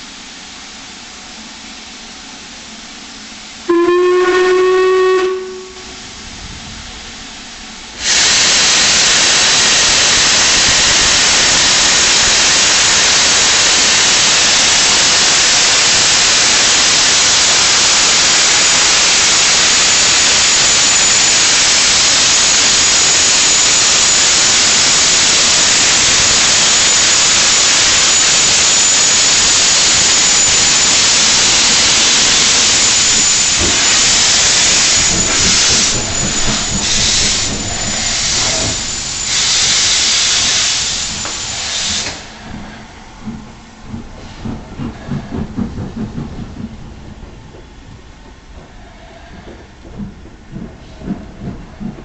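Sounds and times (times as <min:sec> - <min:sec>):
steam hissing: 0:03.1 - 0:46.8
steam locomotive whistle: 0:03.7 - 0:06.0, 0:08.0 - 0:42.2.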